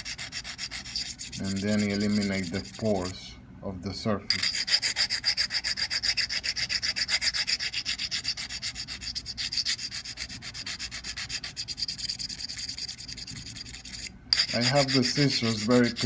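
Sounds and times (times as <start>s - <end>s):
blade scraping on sharpening stone: 0.0s - 3.1s, 4.3s - 16.0s.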